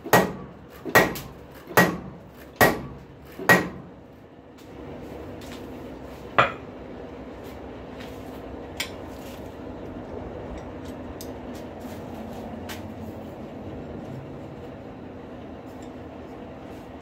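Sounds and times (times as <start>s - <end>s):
forge humming: 0.0s - 17.0s.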